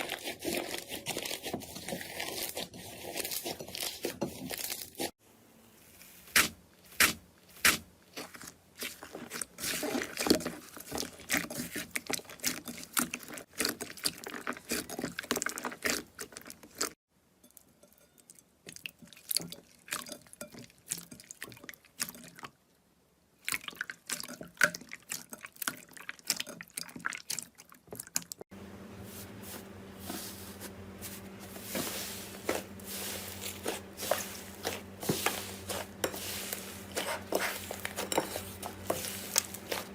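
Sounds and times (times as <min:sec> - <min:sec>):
steady low hum: 0:28.5 - 0:39.9.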